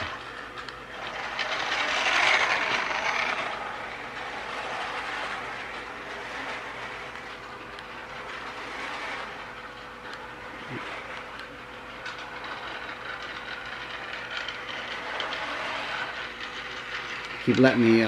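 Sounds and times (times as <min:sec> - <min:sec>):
toy train motors whirring: 0:00.0 - 0:18.0
wheels rolling on metal rails: 0:00.0 - 0:18.0.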